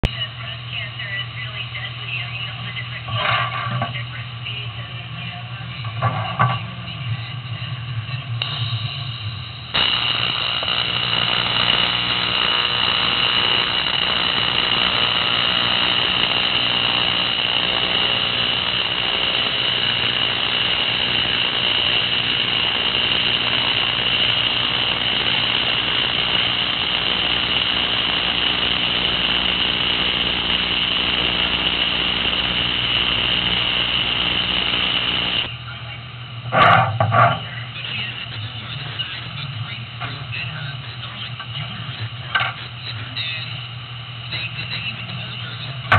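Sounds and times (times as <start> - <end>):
welding arc buzzing: 8.4 - 35.6.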